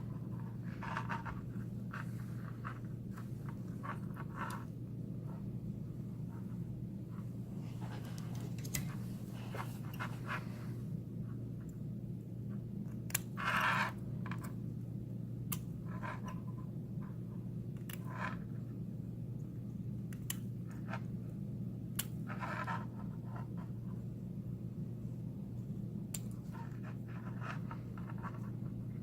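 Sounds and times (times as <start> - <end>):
steady low hum: 0.0 - 29.0
cable rustling: 6.3 - 10.7.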